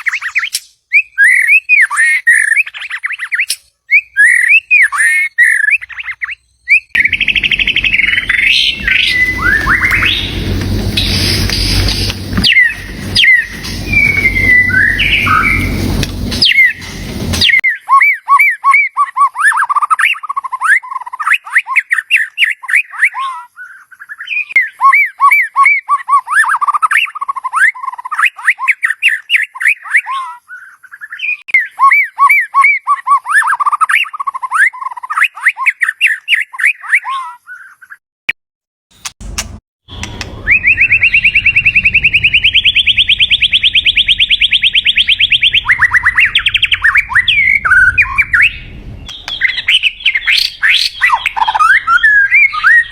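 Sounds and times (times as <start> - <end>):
bird singing warbled phrases: 0.0 - 38.0, 40.3 - 52.9
fast rising bird trill: 5.4 - 17.6, 40.4 - 52.9
low rumble: 7.0 - 17.6, 39.2 - 52.9.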